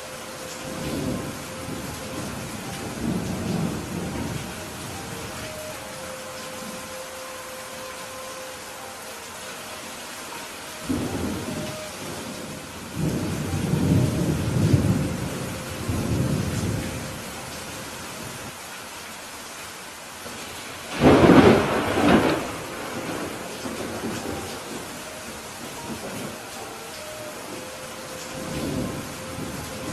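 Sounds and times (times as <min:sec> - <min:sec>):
steady rain: 0:00.0 - 0:29.9
thunder rolling: 0:20.9 - 0:26.3.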